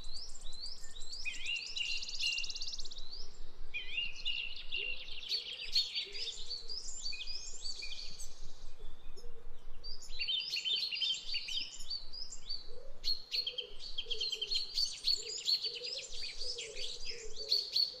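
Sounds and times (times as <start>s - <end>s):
songbirds chirping and singing: 0.0s - 18.0s.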